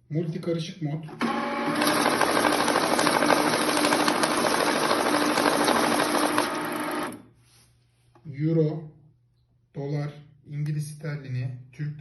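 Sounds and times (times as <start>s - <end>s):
rapid ticking of banknotes: 1.8s - 7.1s.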